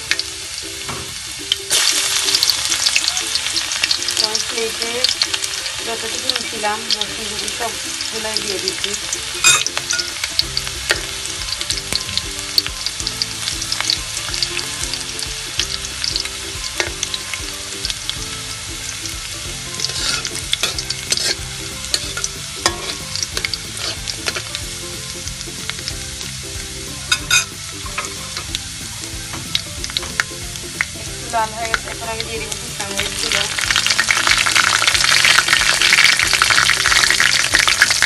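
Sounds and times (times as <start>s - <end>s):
garlic sizzling in hot oil: 0.0s - 38.0s
utensil scraping a pan: 18.1s - 25.1s.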